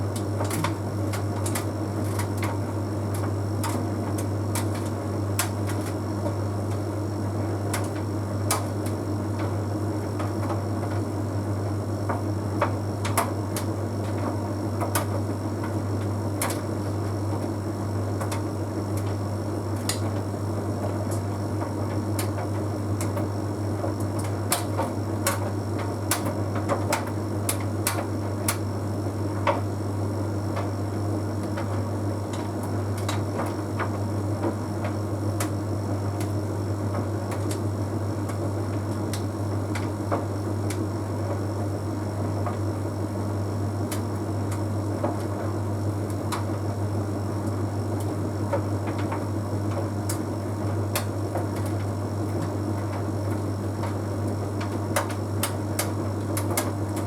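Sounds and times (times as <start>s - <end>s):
tumble dryer humming and whirring: 0.0s - 57.0s
clothes clicking in dryer drum: 0.1s - 6.0s, 47.4s - 57.0s.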